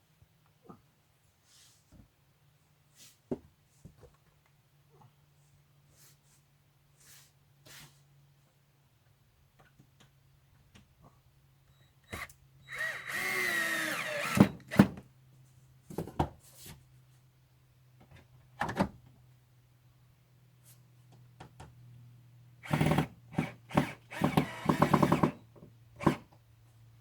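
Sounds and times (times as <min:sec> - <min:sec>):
power drill driving screw: 0:12.1 - 0:14.8, 0:22.6 - 0:25.4.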